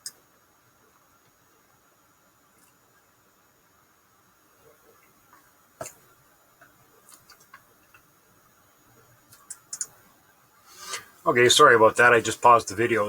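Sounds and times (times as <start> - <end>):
faint clicks and ticks: 0.0 - 0.4, 2.5 - 3.1, 4.6 - 8.2, 8.9 - 10.2.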